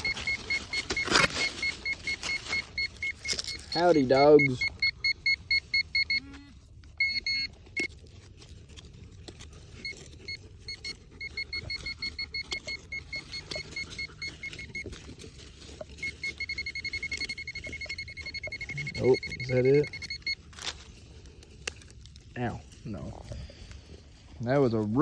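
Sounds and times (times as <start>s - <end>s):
metal detector beeping: 0.0s - 7.9s, 9.7s - 20.5s
digging in soil: 0.0s - 25.0s.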